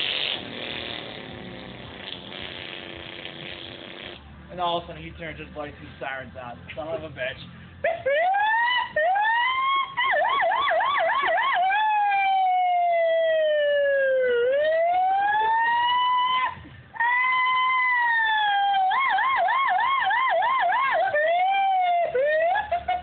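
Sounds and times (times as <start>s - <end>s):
person imitating a siren: 7.9s - 22.8s.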